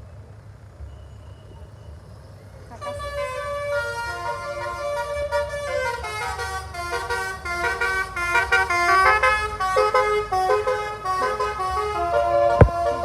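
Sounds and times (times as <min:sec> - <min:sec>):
multi-tone electric horn tune: 0:02.8 - 0:13.0.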